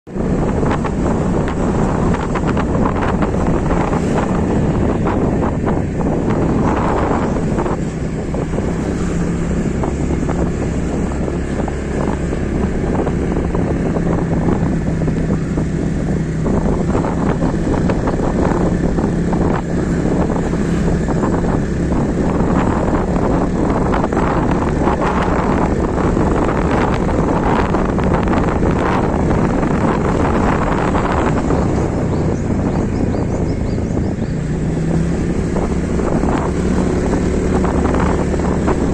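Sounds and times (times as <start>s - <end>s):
vehicle engine droning: 0.0s - 38.9s
wind on microphone: 0.1s - 38.9s.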